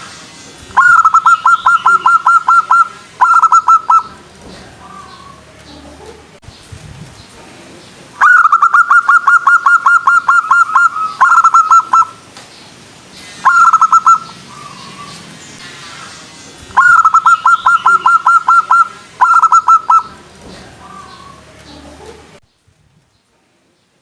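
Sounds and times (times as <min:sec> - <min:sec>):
dove cooing: 0:00.8 - 0:06.2, 0:08.2 - 0:12.2, 0:13.5 - 0:15.2, 0:16.8 - 0:22.4.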